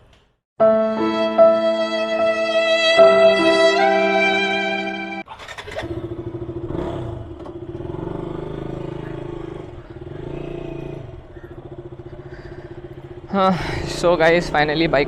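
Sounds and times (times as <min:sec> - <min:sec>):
motorcycle engine running: 0:05.3 - 0:15.0.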